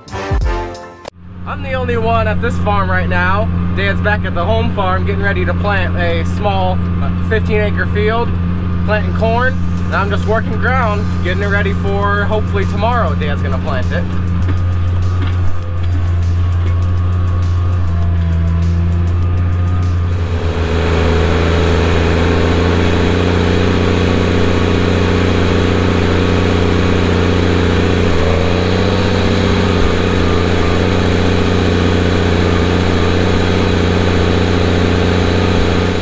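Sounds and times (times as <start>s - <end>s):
tractor engine under load: 1.2s - 36.0s
mechanical noise: 12.4s - 36.0s.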